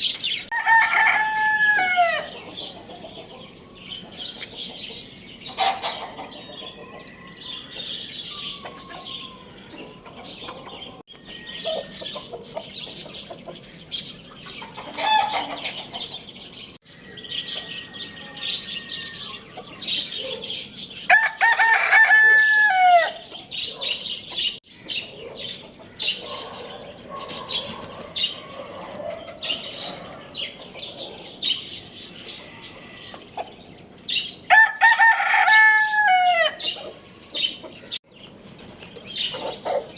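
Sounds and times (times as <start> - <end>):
small birds chirping: 0.0 - 0.6, 2.2 - 21.1, 23.1 - 34.5, 36.6 - 39.9
chickens clucking: 0.0 - 16.8, 17.4 - 35.2, 35.8 - 39.9
rooster crowing: 0.5 - 2.4, 21.1 - 23.2, 34.5 - 36.7.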